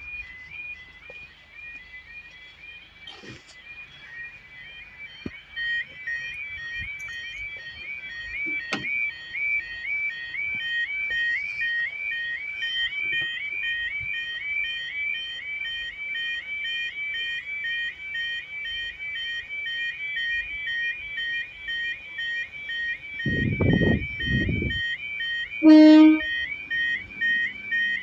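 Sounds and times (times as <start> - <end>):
level crossing warning alarm: 0.0 - 28.0
train horn blast: 25.6 - 26.3.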